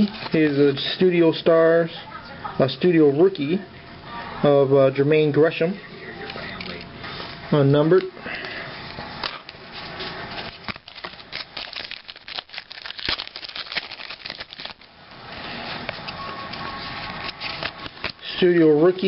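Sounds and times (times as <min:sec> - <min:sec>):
trading cards shuffled by hand: 0:09.2 - 0:14.9.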